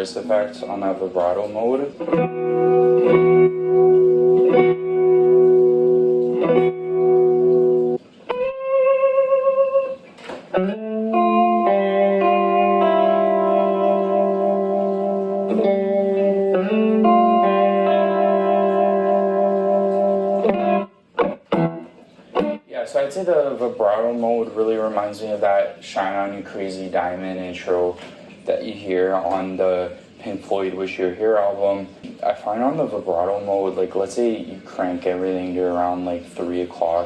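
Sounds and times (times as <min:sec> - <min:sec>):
electric guitar chords with vibrato: 0:02.0 - 0:22.7.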